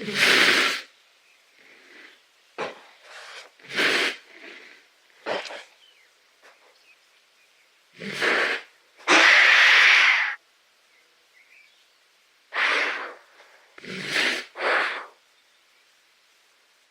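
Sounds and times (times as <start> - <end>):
giraffe snorting: 0.0 - 0.9, 1.6 - 5.8, 8.0 - 10.4, 12.5 - 15.2.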